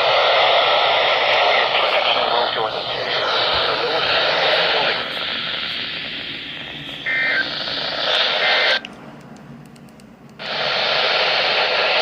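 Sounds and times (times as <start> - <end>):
radio static hiss: 0.0 - 8.9, 10.4 - 12.0.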